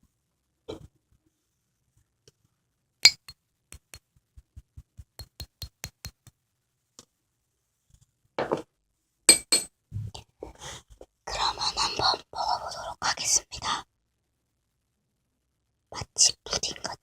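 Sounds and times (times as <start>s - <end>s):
metal spoon clinking on bowl: 3.0s - 3.4s, 9.3s - 9.7s
spoon scraping: 3.0s - 4.0s.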